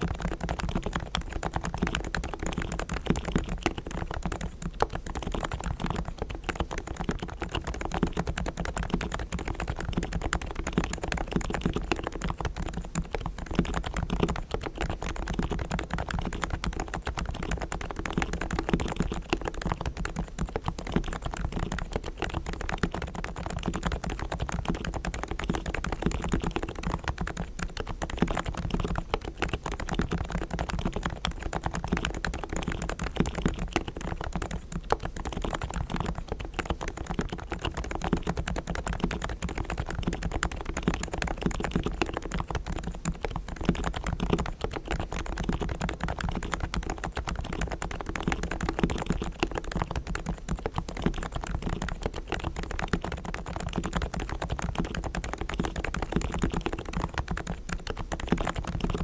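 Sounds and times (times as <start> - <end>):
rapid keyboard typing: 0.0 - 59.0.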